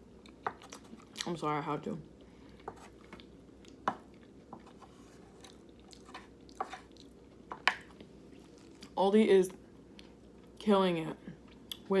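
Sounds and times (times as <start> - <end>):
chewing food: 2.5 - 9.0.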